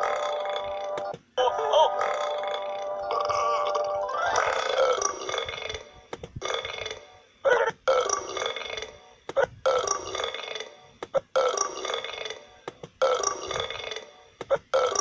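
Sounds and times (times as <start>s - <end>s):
cartoon burps: 0.0s - 0.9s, 1.5s - 5.8s.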